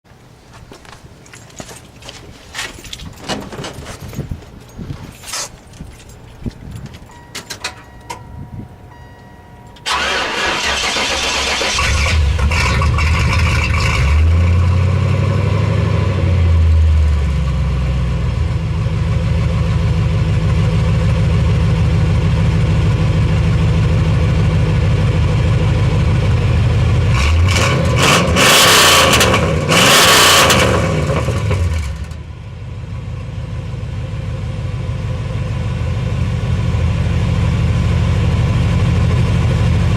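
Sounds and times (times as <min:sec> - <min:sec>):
car engine cranking: 0:05.1 - 0:14.7
car engine idling: 0:07.0 - 0:28.0, 0:30.6 - 0:39.9
engine revving: 0:09.9 - 0:17.2, 0:27.0 - 0:32.2.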